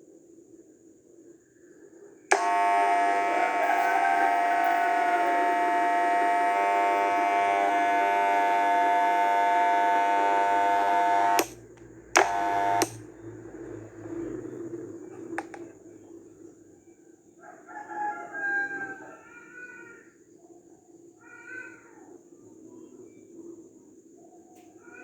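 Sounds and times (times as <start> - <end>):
hair clipper buzzing: 2.3 - 13.1, 15.4 - 15.7.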